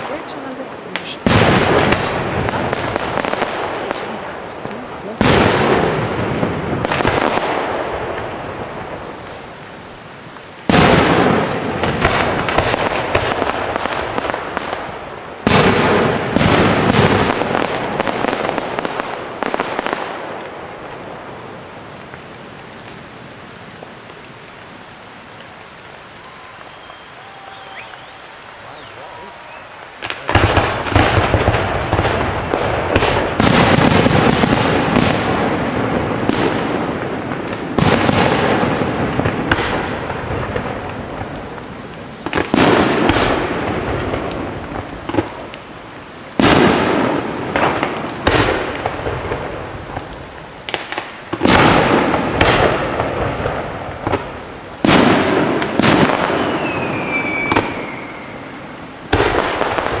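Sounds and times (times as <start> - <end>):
fireworks booming: 0.0 - 24.2, 26.2 - 60.0
crackling firework pops: 1.0 - 21.1, 21.8 - 23.1, 23.8 - 24.6, 26.2 - 60.0
falling firework whistle: 26.2 - 31.1, 55.8 - 58.7.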